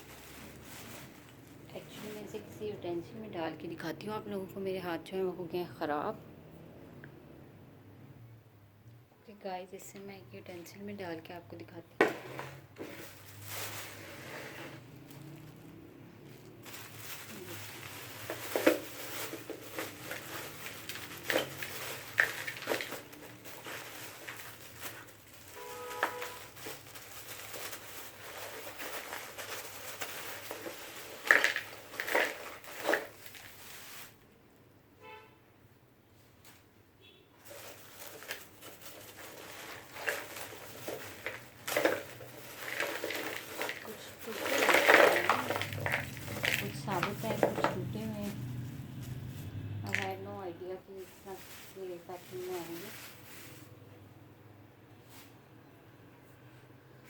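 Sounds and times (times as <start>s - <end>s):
coal lumps clattering into bowl: 16.4s - 33.6s, 37.5s - 48.4s, 49.8s - 50.3s.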